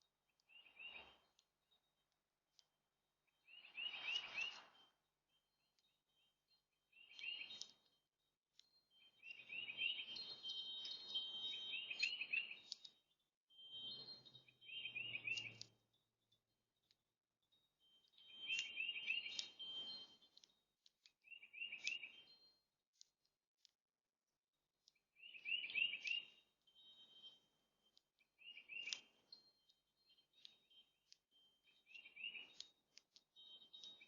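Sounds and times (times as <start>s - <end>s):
small songbirds calling: 0.0s - 23.2s, 24.8s - 34.0s.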